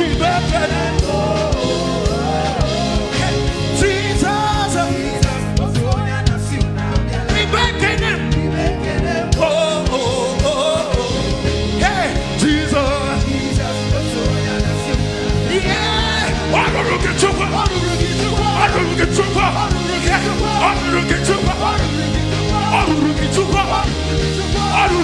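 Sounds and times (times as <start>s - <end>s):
bass line: 0.0s - 25.0s
drums: 0.0s - 25.0s
person singing: 0.0s - 25.0s.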